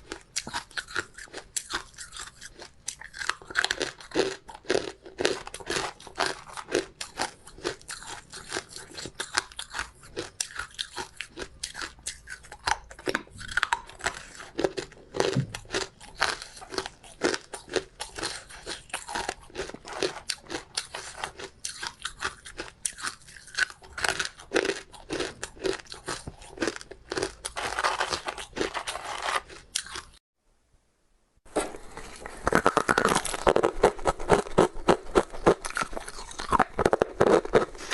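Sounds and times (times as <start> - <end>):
ice crunching while chewed: 0.0 - 30.2, 31.5 - 37.9.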